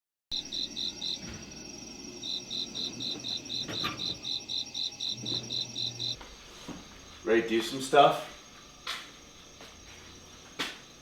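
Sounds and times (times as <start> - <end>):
faint steady trill: 0.3 - 6.4
cricket chirping: 0.3 - 11.0.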